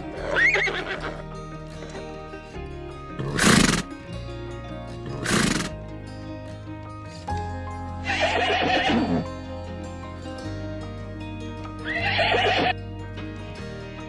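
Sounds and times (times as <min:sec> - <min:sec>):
background music: 0:00.0 - 0:14.0
horse whinnying: 0:00.1 - 0:01.2, 0:03.2 - 0:03.9, 0:05.1 - 0:05.8, 0:08.0 - 0:09.3, 0:11.8 - 0:12.8.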